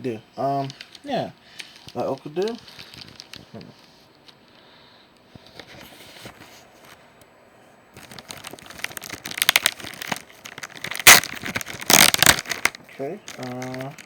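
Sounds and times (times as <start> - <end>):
packaging crinkling and tearing: 1.6 - 4.0, 8.0 - 14.0.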